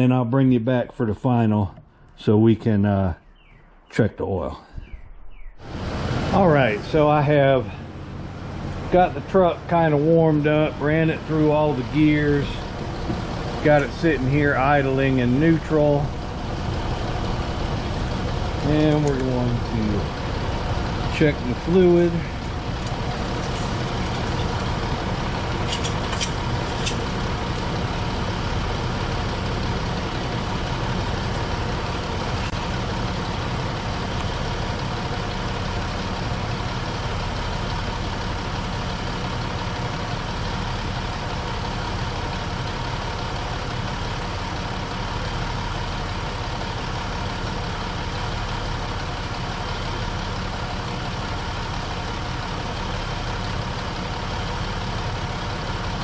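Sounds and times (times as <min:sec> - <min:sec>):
pickup engine idling: 0:05.6 - 0:56.0.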